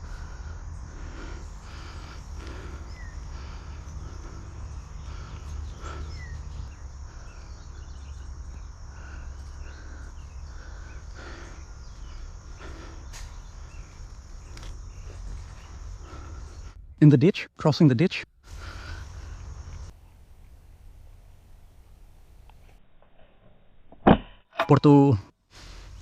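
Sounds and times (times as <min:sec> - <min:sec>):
bird or insect chirps: 0:00.0 - 0:20.6.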